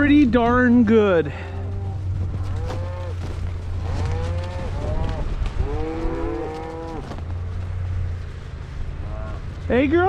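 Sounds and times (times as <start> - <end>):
idling engine hum: 0.0 - 10.0
cattle bawling: 1.3 - 7.2.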